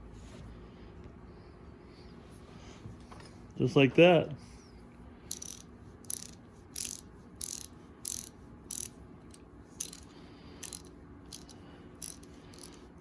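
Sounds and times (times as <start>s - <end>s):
ratchet wrench clicking: 5.3s - 13.0s.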